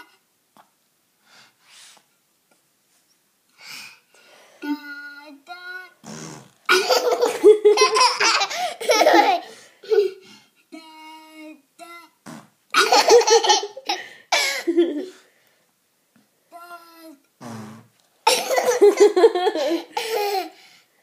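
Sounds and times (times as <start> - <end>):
young child laughing: 6.7 - 10.2, 12.8 - 15.2, 18.3 - 20.6.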